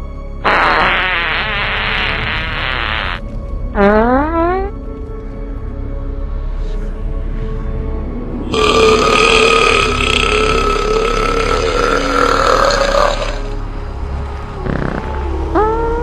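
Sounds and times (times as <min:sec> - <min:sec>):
long loud burp: 0:00.4 - 0:03.2, 0:08.5 - 0:13.6, 0:14.6 - 0:15.1.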